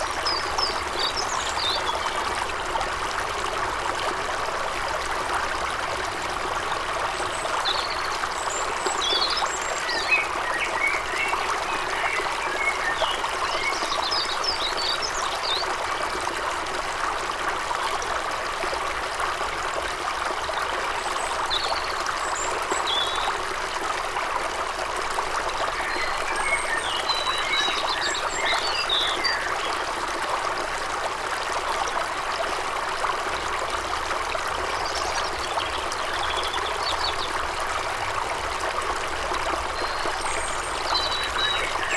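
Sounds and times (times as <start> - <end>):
brook babbling: 0.0 - 41.9
small birds chirping: 39.7 - 41.9.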